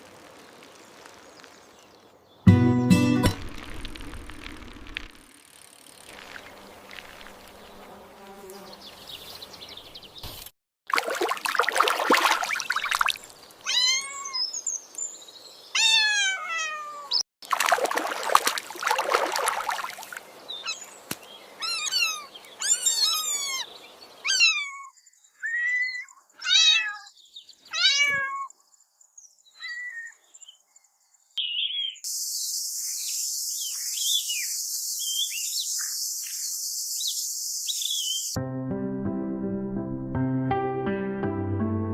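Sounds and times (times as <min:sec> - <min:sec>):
kittens meowing: 0:13.7 - 0:14.4, 0:15.8 - 0:17.2, 0:21.6 - 0:27.1, 0:27.7 - 0:28.5.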